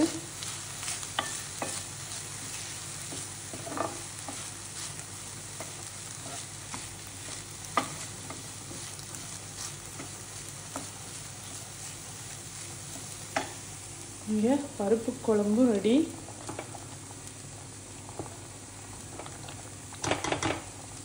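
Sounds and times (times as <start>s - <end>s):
spoon scraping a pan: 0.0s - 11.6s
food sizzling in a pan: 0.0s - 21.0s.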